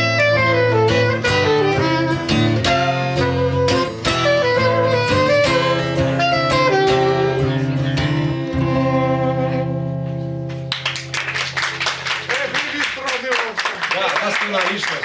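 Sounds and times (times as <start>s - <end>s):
guitar playing: 0.0s - 12.9s.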